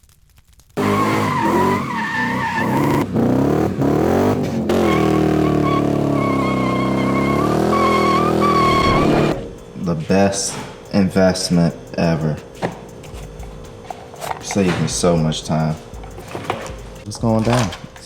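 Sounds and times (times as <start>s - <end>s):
car engine at high revs: 0.8s - 9.7s
tyres squealing: 0.8s - 18.0s.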